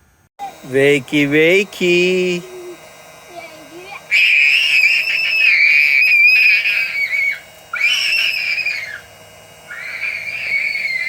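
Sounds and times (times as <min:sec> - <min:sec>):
child screaming: 0:02.5 - 0:09.1, 0:09.7 - 0:11.0.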